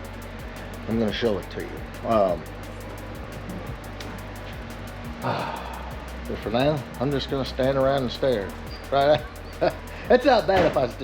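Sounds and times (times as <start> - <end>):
background music with steady beat: 0.0 - 11.0.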